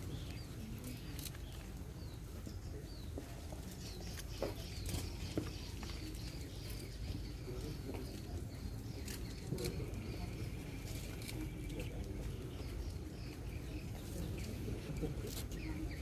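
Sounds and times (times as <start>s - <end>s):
faint bird chirps: 3.8s - 16.0s.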